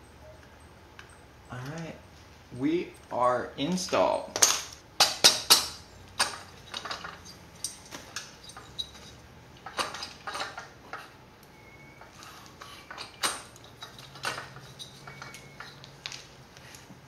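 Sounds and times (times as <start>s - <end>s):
metal engine parts clinking: 4.4s - 17.0s.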